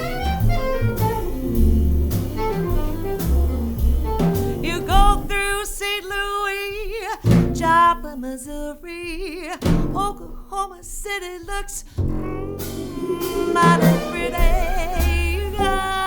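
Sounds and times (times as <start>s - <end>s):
plucked double bass: 0.0s - 5.4s, 7.3s - 8.0s, 12.0s - 16.0s
saxophone: 0.0s - 5.6s, 12.1s - 16.0s
drum kit: 0.0s - 8.2s, 9.1s - 16.0s
person singing with vibrato: 4.6s - 16.0s.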